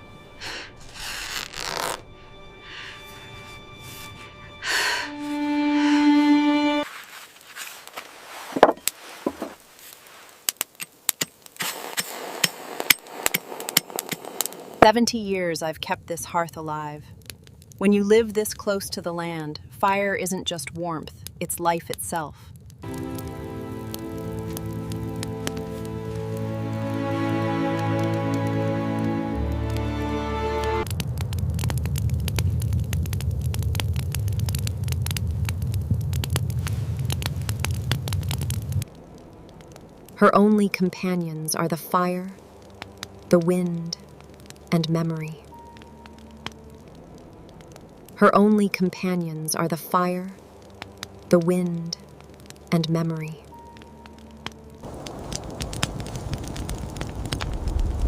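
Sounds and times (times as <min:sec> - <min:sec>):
steady hiss: 0:00.0 - 0:15.0, 0:54.8 - 0:58.0
wood fire crackling: 0:00.0 - 0:58.0
low rumble: 0:30.8 - 0:41.2, 0:53.7 - 0:58.0.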